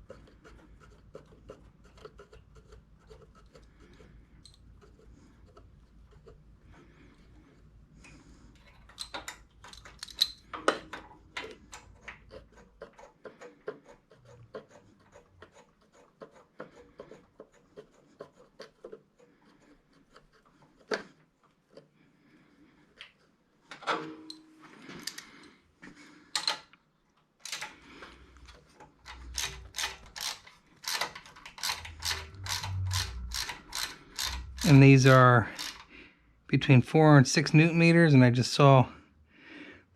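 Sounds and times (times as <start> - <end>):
hand tools clicking and knocking: 8.6 - 21.1, 27.4 - 35.9
ratchet wrench clicking: 29.1 - 35.9.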